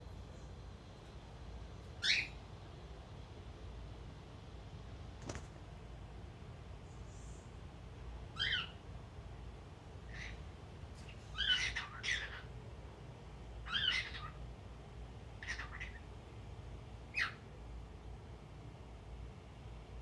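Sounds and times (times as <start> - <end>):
cockatiel chirpy warbling calls: 2.0 - 2.4, 8.4 - 8.8, 10.1 - 10.4, 11.1 - 12.5, 13.6 - 14.4, 15.4 - 16.1, 17.1 - 17.4.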